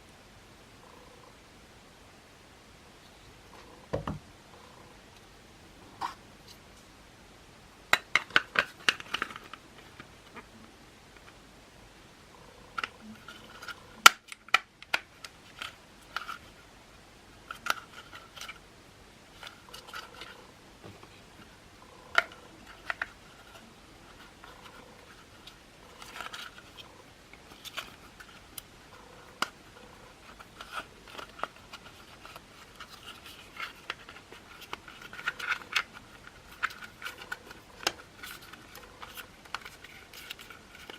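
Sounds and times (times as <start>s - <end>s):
plastic parts clicking and squeaking: 21.0s - 40.9s.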